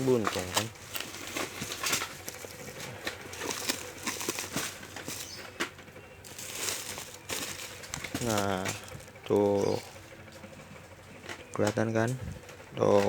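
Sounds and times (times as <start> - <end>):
plastic packaging crinkling: 0.0 - 9.2.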